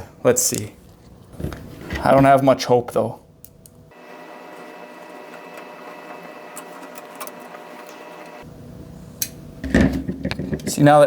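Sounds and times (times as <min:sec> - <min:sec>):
faint mechanical whir: 0:03.0 - 0:11.0.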